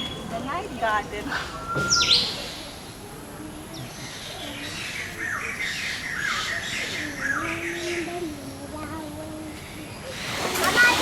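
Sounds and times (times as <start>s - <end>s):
faint high bird chirping: 1.4s - 9.1s.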